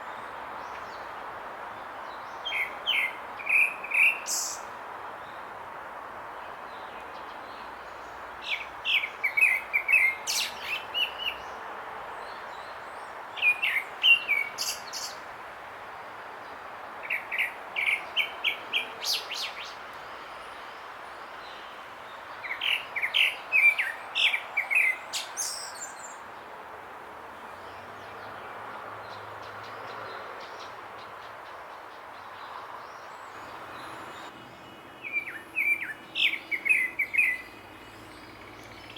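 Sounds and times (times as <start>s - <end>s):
steady background hiss: 0.0s - 38.9s
thrush singing whistled notes: 33.1s - 38.9s.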